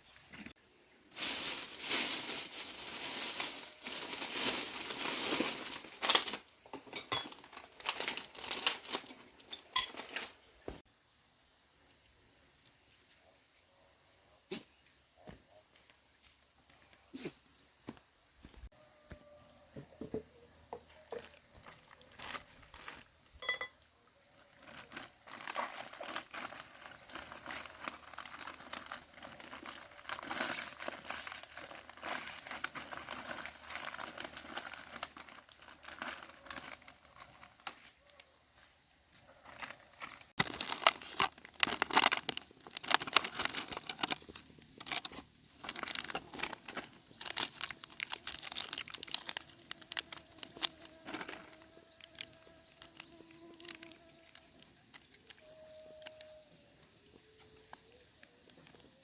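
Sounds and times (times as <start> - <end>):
dry material crinkling and rustling: 0.2 - 10.8, 21.0 - 23.6, 24.2 - 38.2, 39.3 - 55.4.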